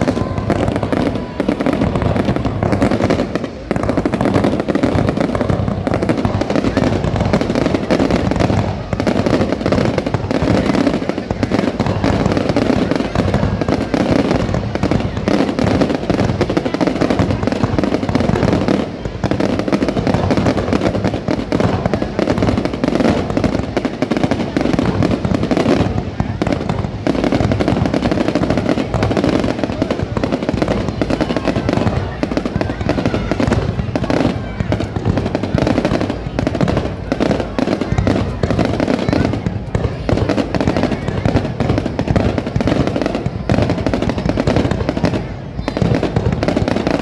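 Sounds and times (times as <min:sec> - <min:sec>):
fireworks crackling bangs: 0:00.0 - 0:47.0.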